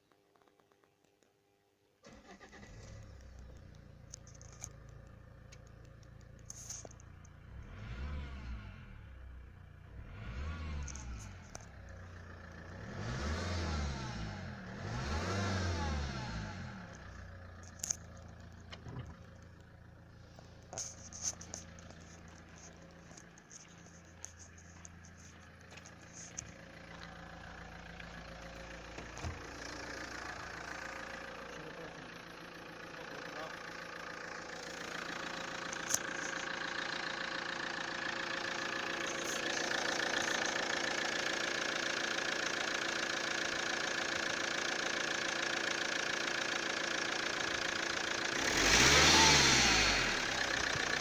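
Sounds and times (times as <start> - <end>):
car engine revving and idling: 2.1 - 51.0
sharp clicks: 2.8 - 7.4.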